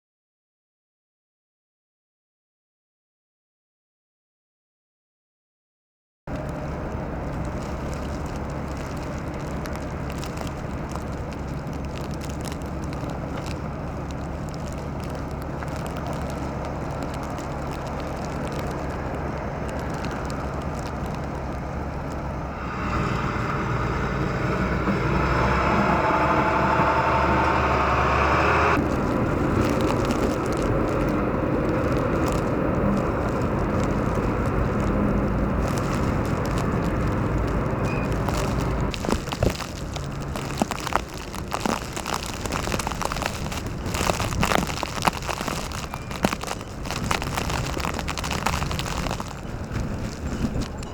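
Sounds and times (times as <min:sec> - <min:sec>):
low rumble of traffic: 0:06.3 - 0:50.9
loud vehicle passing: 0:21.6 - 0:38.9.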